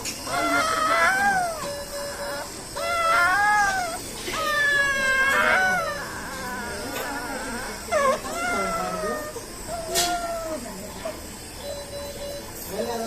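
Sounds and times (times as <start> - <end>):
baby crying: 0.3 - 10.7.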